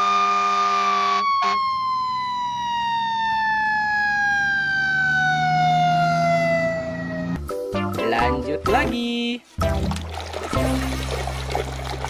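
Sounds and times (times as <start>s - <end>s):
fire truck siren winding down: 0.0s - 7.5s.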